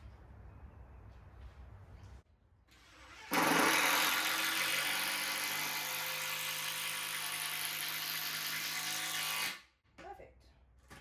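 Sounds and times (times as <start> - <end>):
electric drill driving screw: 2.7 - 9.6.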